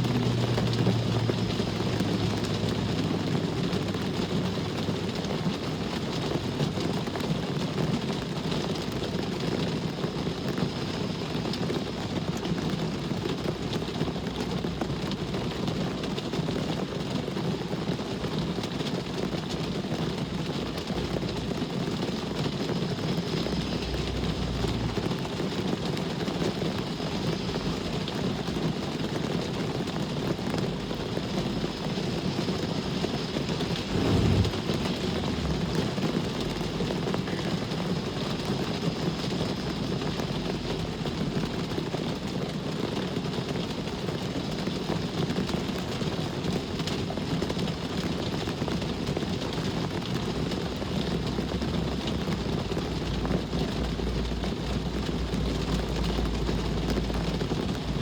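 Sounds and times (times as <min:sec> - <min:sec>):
road traffic hum: 0:00.0 - 0:06.7, 0:20.8 - 0:42.0, 0:50.3 - 0:58.0
steady rain: 0:00.0 - 0:58.0
low rumble: 0:32.6 - 0:37.3.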